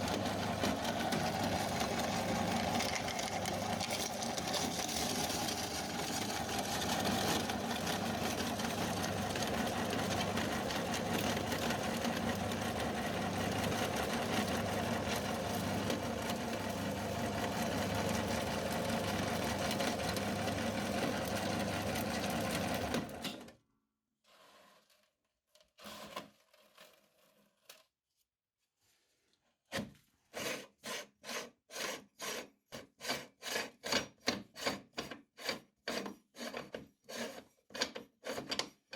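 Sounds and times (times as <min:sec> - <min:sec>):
meat grinder running: 0:00.0 - 0:23.4.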